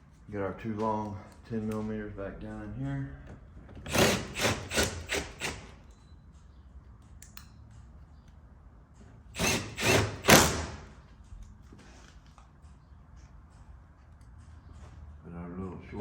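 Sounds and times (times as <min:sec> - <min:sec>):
hand ratchet rasping: 0:03.8 - 0:05.7, 0:09.4 - 0:10.8.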